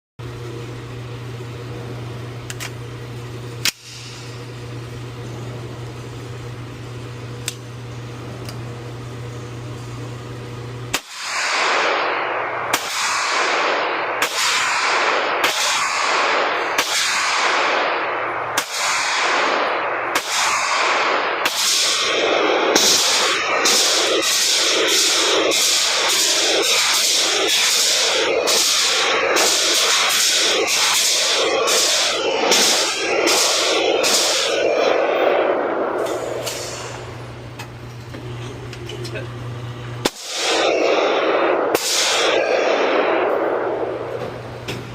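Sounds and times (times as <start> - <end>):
steady low hum: 0.2 - 44.9
airsoft pistol cracks: 3.6 - 4.3.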